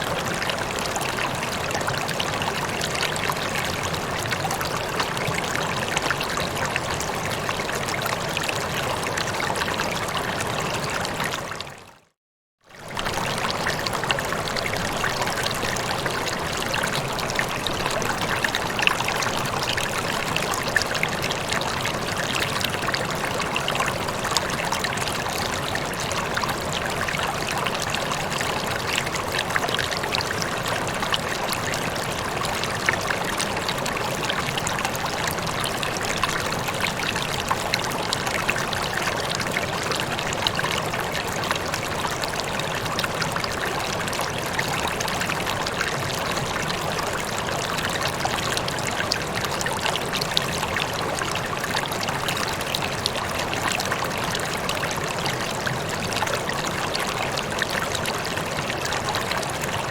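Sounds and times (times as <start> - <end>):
water trickling and splashing: 12.7 - 59.9.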